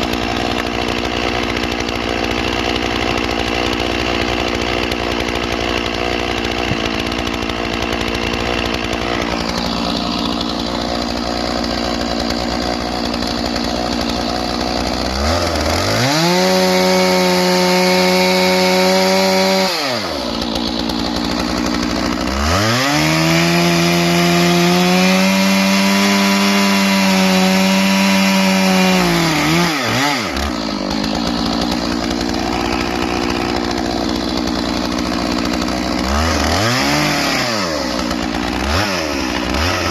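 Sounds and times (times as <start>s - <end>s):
chainsaw idling and revving: 0.0s - 39.9s.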